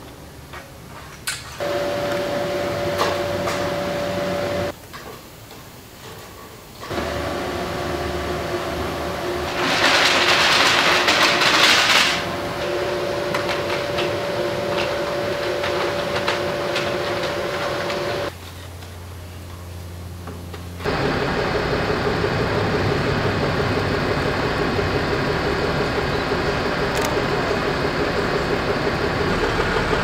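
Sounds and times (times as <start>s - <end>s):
machinery humming: 1.6s - 4.8s, 6.8s - 18.4s, 19.2s - 30.0s.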